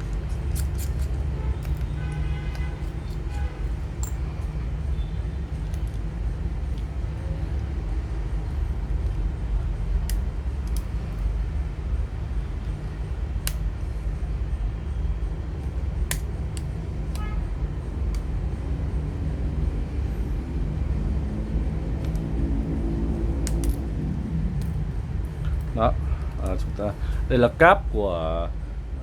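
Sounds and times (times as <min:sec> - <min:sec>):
small sharp clicks of tools: 0:00.0 - 0:04.5, 0:10.0 - 0:11.3, 0:13.4 - 0:13.9, 0:15.6 - 0:17.4, 0:18.1 - 0:18.4, 0:22.0 - 0:22.4, 0:23.4 - 0:23.9
low background rumble: 0:00.0 - 0:29.0.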